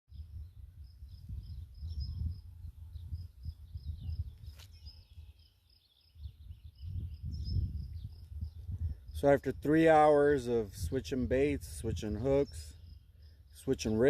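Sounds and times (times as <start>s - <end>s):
birds chirping: 0.1s - 14.0s.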